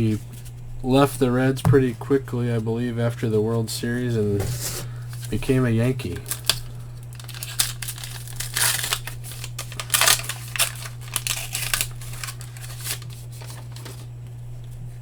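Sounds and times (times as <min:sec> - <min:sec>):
steady low hum: 0:00.0 - 0:15.0
wrapper tearing and crinkling: 0:06.0 - 0:14.0.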